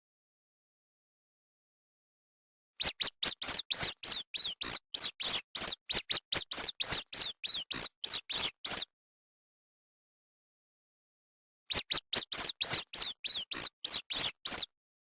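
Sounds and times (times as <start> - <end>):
rat squeaking: 2.8 - 8.9, 11.7 - 14.8.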